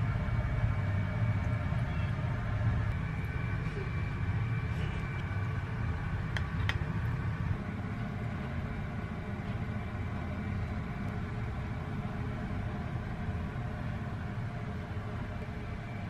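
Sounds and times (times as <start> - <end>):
vehicle rumbling in motion: 0.0 - 16.0.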